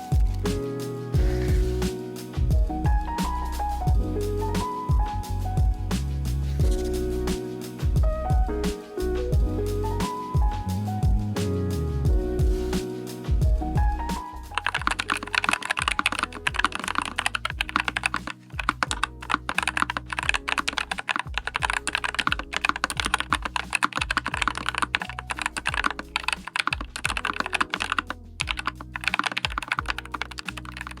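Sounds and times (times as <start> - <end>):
typing on mechanical keyboard: 14.6 - 31.0.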